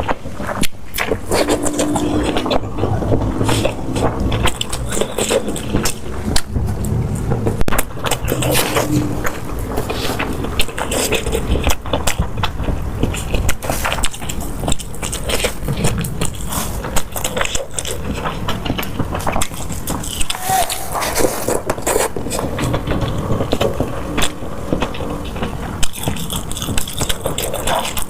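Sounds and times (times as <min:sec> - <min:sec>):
person chewing with clicks: 0:00.0 - 0:07.0, 0:07.8 - 0:28.0.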